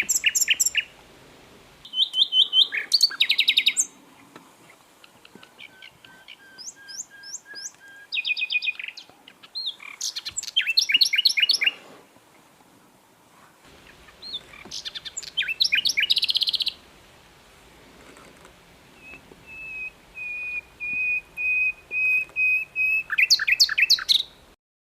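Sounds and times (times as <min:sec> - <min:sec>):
flycatcher singing: 0:00.0 - 0:00.9, 0:05.4 - 0:11.7, 0:13.8 - 0:16.8, 0:19.0 - 0:24.4.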